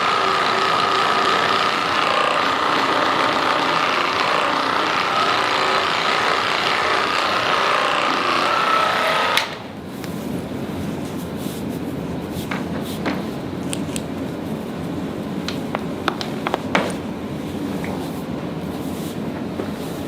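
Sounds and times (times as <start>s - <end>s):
massage gun whine: 0.0s - 9.8s.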